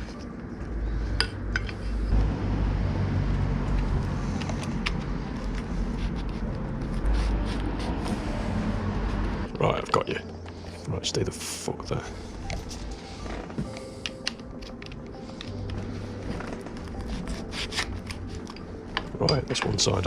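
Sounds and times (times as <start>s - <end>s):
low rumble: 0.7s - 9.6s.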